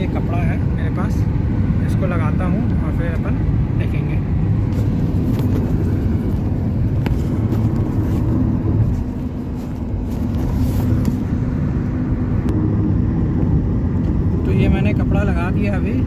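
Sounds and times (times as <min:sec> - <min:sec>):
car engine and road noise: 0:00.0 - 0:16.0.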